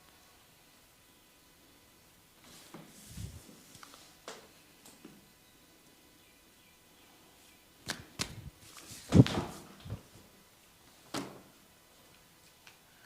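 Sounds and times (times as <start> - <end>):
hands slapping skin: 7.8 - 8.4.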